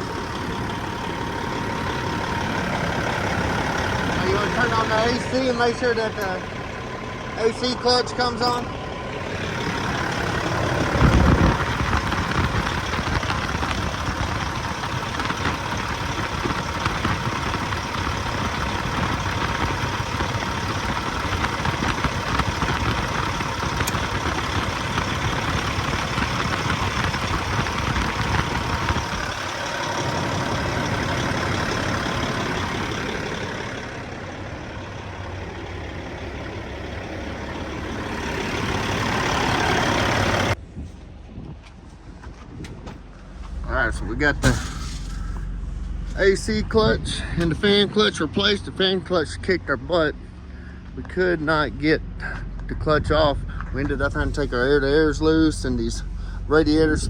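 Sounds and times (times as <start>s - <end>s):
diesel truck engine idling: 0.0s - 57.0s
engine fan air rush: 0.0s - 57.0s
low thump: 42.8s - 47.0s.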